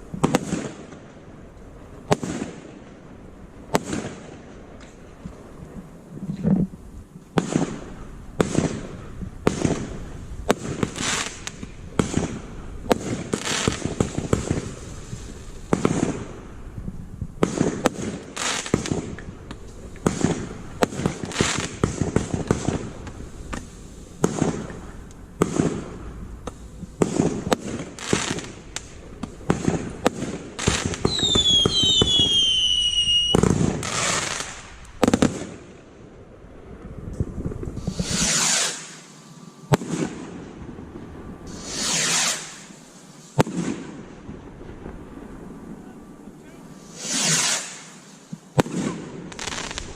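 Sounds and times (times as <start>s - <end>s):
firework whistles falling in pitch: 30.7s - 34.6s, 37.8s - 39.1s, 41.5s - 42.7s.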